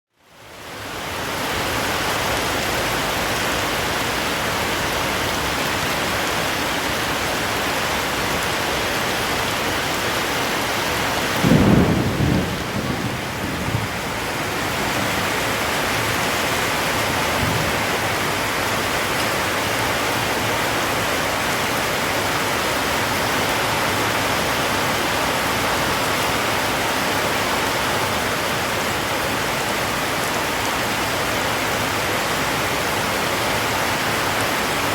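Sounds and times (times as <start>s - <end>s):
heavy rain falling: 0.2s - 34.9s
low rumble of thunder: 11.4s - 18.1s.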